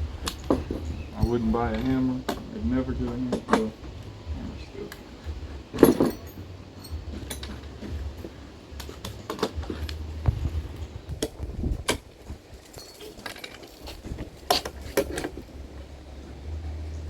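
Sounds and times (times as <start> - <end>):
low rumble: 0.0 - 12.9, 13.7 - 17.0
hammer and nails clinking: 4.9 - 10.2, 11.9 - 15.6.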